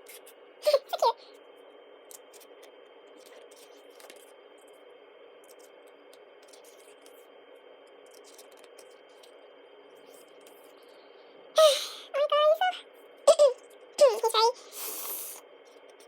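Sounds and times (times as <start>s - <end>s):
pages being turned: 2.1s - 4.3s, 8.0s - 9.3s.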